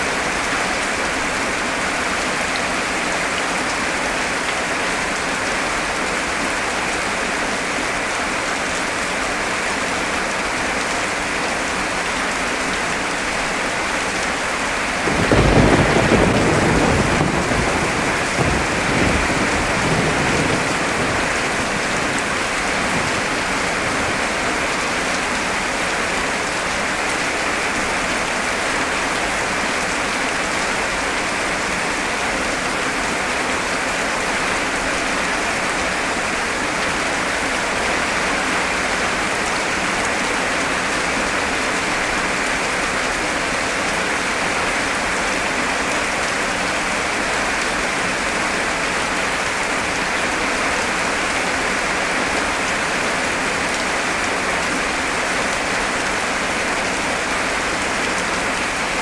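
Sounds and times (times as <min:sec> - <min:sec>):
heavy rain: 0:00.0 - 0:59.0
thunder clap rumbling: 0:15.0 - 0:24.3.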